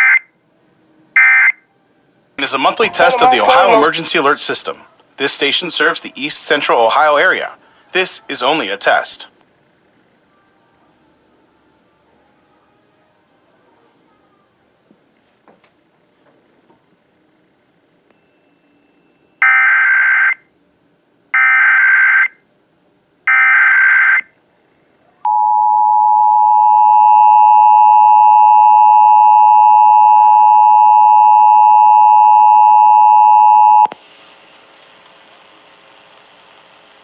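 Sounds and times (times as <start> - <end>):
faint hum: 8.8 - 14.9.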